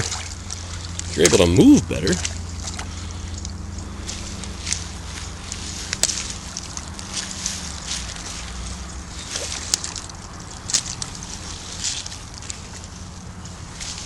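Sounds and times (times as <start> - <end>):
pond water sloshing: 0.0 - 14.0
steady low hum: 0.0 - 14.0.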